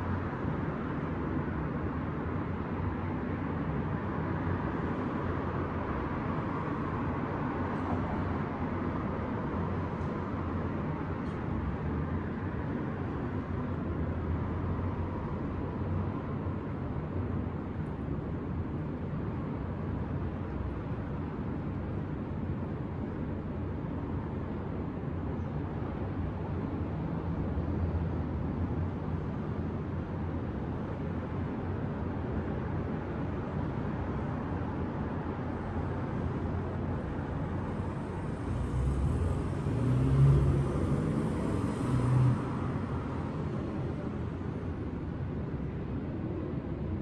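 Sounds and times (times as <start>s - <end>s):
city traffic rumbling: 0.0s - 47.0s
loud vehicle passing: 38.5s - 43.2s.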